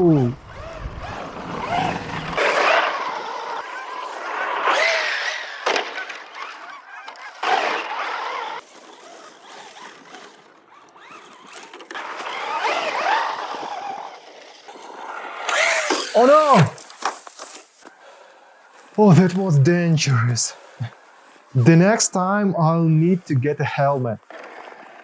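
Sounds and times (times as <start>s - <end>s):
tyres rushing on dirt: 0.0s - 17.9s, 18.8s - 23.9s
toy truck motor whining: 0.0s - 19.4s, 24.2s - 25.0s.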